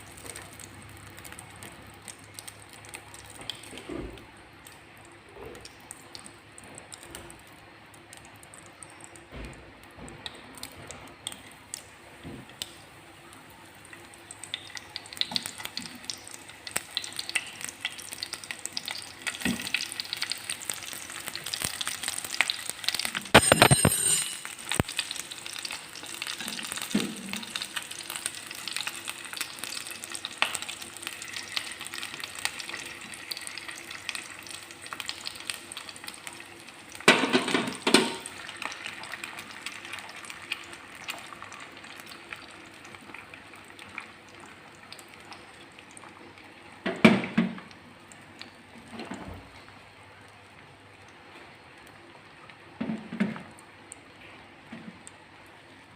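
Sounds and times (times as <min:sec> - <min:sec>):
eggs sizzling in a pan: 0:00.0 - 0:49.0
pan clattering: 0:23.3 - 0:24.8, 0:37.1 - 0:38.2.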